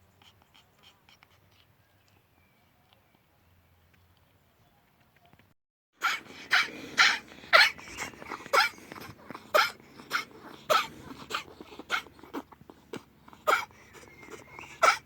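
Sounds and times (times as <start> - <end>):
ferret coughing: 6.0 - 15.0.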